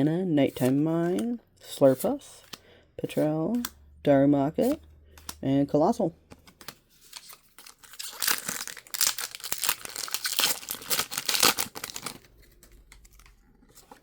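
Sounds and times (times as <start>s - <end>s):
foil wrapper crinkling and tearing: 7.0s - 13.4s.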